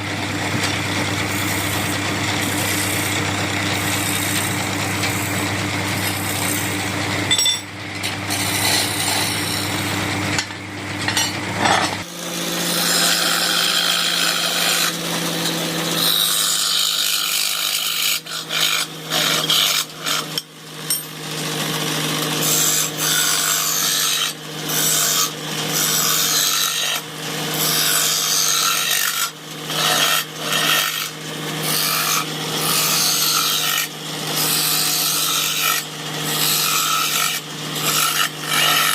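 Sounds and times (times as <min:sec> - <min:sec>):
wood rasping scrape: 0:00.0 - 0:07.3, 0:08.1 - 0:10.4, 0:11.6 - 0:38.9
power tool motor running: 0:00.0 - 0:38.9.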